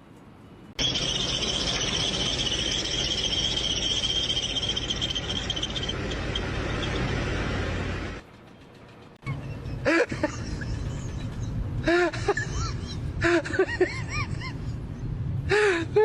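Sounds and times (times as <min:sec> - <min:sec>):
power tool grinding with whine: 0:00.8 - 0:08.2.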